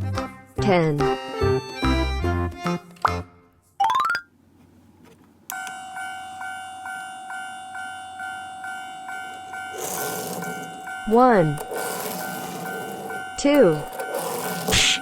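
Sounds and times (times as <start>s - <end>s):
electronic crossing warning bell: 5.5s - 15.0s.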